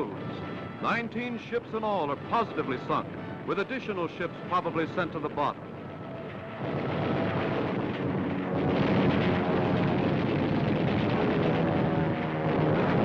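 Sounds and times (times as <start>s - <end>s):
explosions: 6.6s - 13.0s.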